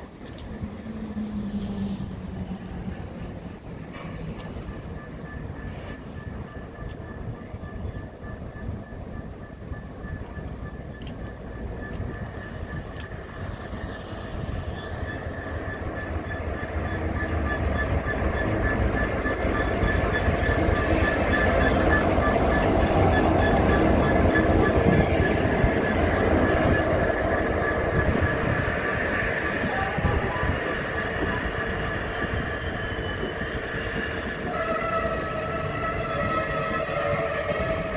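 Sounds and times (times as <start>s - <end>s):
train rumbling past: 0.0s - 37.9s
train whine: 0.0s - 37.9s.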